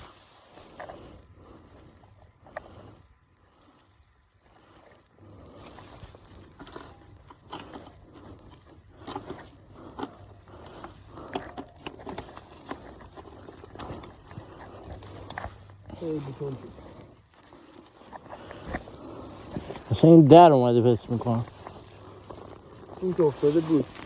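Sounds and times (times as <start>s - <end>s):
tools clicking on motorcycle chain: 6.4s - 14.2s.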